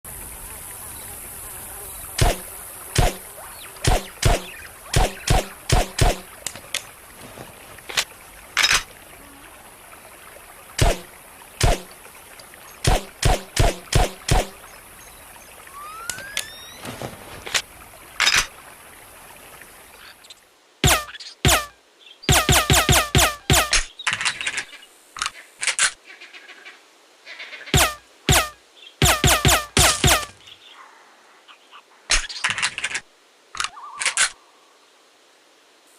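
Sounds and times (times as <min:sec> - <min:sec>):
steady hiss: 0:00.1 - 0:20.9, 0:34.3 - 0:35.9.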